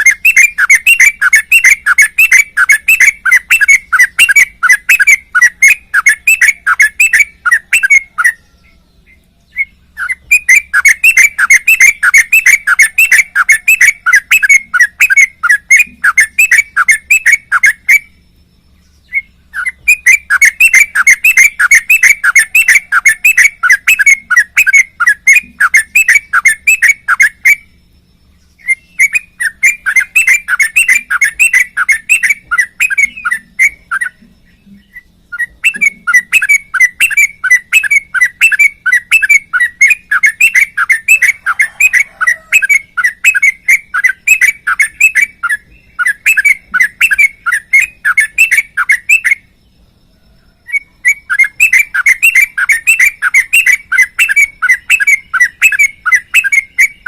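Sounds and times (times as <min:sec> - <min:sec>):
bird singing rapid chirping notes: 0:00.0 - 0:57.0.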